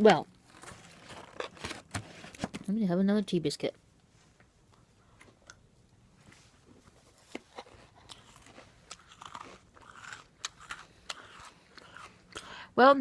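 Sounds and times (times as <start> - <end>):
biscuit crunching: 7.0 - 12.5.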